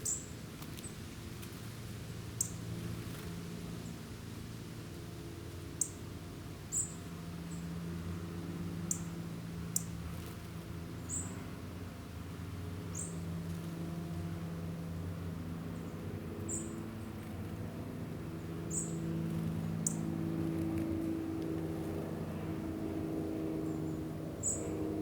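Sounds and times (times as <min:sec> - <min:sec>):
songbird call notes: 0:00.0 - 0:00.3, 0:06.7 - 0:07.0.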